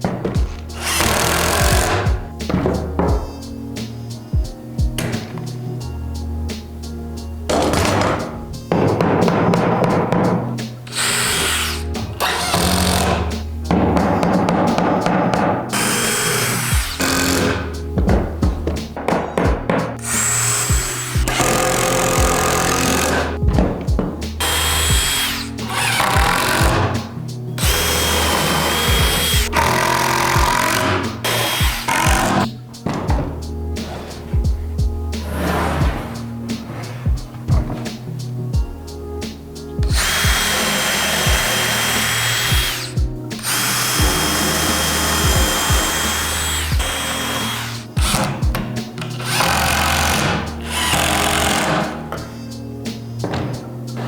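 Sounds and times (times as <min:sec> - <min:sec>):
power tool whining: 0:00.0 - 0:04.2, 0:07.5 - 0:37.8, 0:38.6 - 0:54.0
background music: 0:00.0 - 0:54.0.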